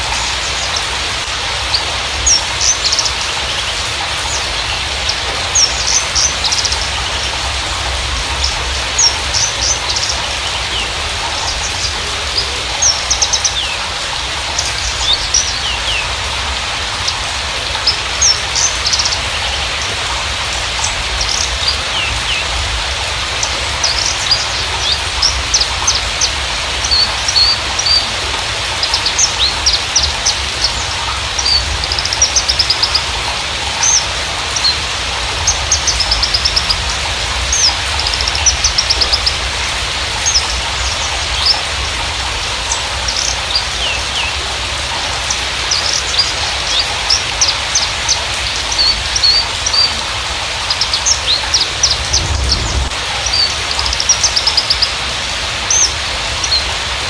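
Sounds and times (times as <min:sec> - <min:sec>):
bird chirping and trilling: 0:00.0 - 0:22.7, 0:23.3 - 0:33.2, 0:42.6 - 0:55.0.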